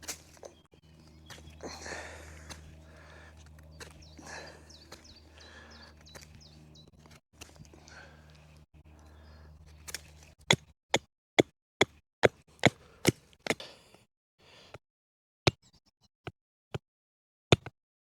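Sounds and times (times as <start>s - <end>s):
blade chopping wood: 9.8s - 13.6s.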